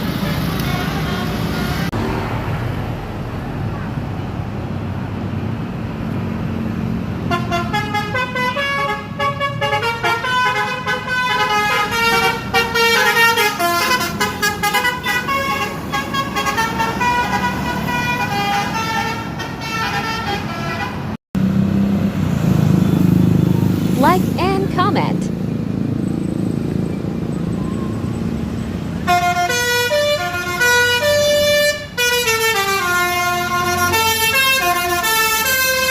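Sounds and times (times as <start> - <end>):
bus engines running: 0.0 - 35.9
bus horn playing a fast tune: 7.3 - 21.1, 29.0 - 35.9.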